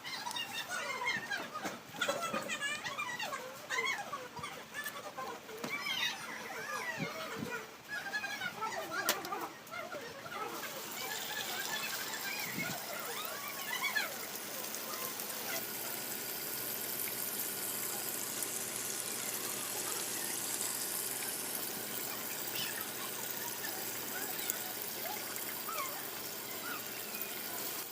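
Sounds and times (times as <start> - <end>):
fountain water trickling and splashing: 10.6 - 27.9.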